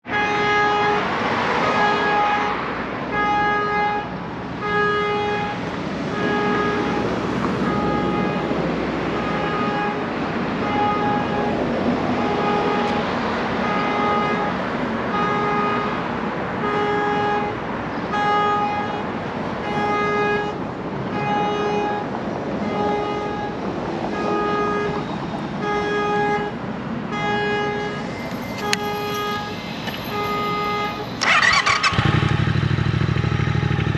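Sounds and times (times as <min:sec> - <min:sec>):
pulsing electronic note: 0:27.8 - 0:32.7.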